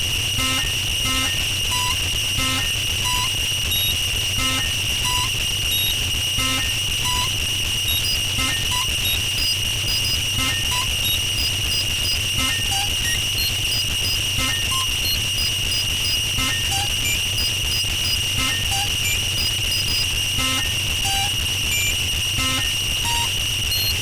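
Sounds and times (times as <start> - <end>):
high-pitched electronic whine: 0.4 - 24.0
short electronic blips: 14.4 - 15.2.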